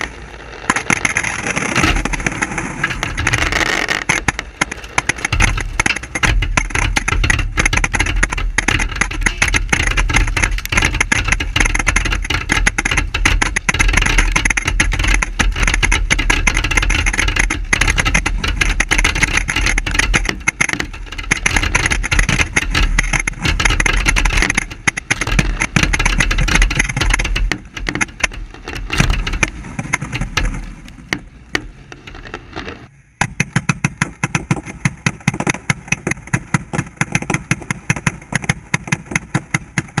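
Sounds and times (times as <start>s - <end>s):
fireworks bangs and crackling: 0.0s - 14.9s.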